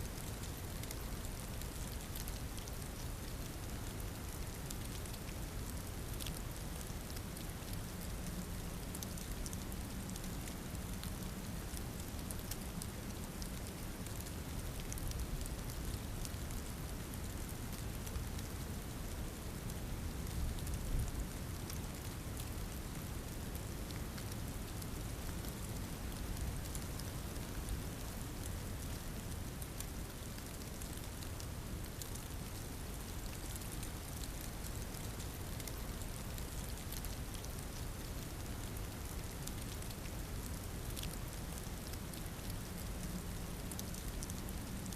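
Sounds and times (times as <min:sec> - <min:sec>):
steady rain falling: 0:00.0 - 0:44.9.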